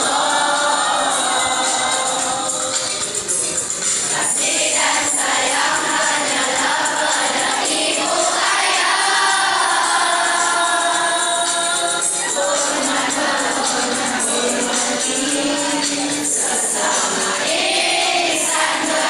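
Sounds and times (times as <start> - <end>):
song with group vocals: 0.0 - 19.0.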